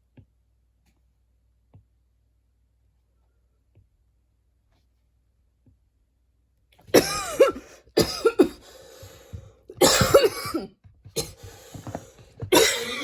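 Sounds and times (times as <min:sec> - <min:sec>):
woman coughing hard: 0:06.9 - 0:08.8, 0:09.7 - 0:13.0.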